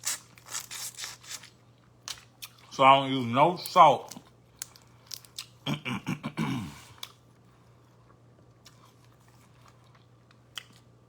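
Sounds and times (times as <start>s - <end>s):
low steady hum: 0.0s - 11.0s
man's voice sounds: 2.8s - 4.2s
quiet chewing: 6.8s - 10.9s.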